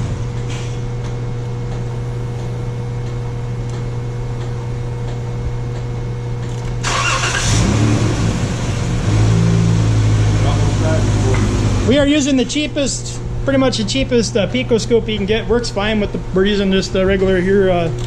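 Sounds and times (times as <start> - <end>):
car engine idling: 6.8 - 11.9.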